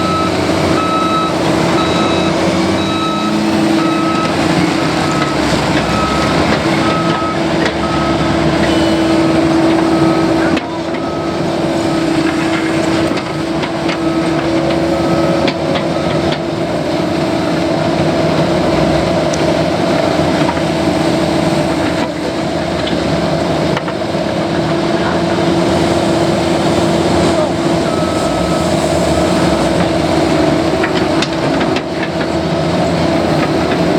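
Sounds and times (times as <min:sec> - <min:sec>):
backup alarm beeping: 0:00.0 - 0:16.3, 0:26.3 - 0:31.5
excavator diesel engine running: 0:00.0 - 0:33.9.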